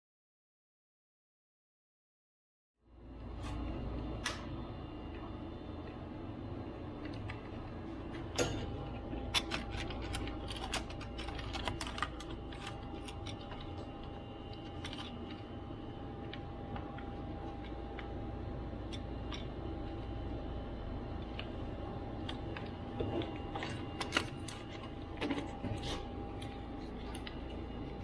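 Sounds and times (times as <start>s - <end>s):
steady low hum: 2.8s - 28.0s
small parts clicking and tapping: 9.3s - 15.5s.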